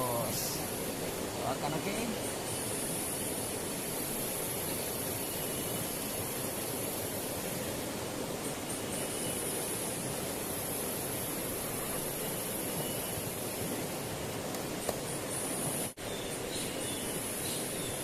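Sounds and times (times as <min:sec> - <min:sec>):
high-pitched hiss: 0:00.0 - 0:18.0
river water flowing: 0:00.0 - 0:18.0.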